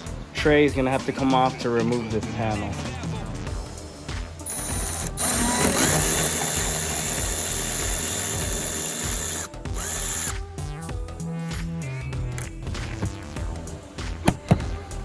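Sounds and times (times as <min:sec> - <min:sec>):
power tool motor whirring: 0:04.5 - 0:10.3.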